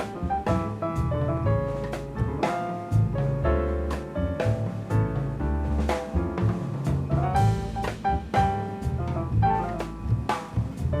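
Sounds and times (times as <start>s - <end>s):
jazzy instrumental music: 0.0s - 11.0s.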